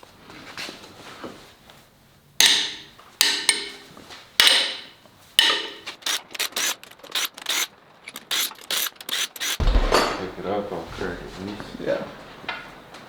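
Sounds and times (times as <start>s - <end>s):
metal clicks and knocks: 5.4s - 10.3s.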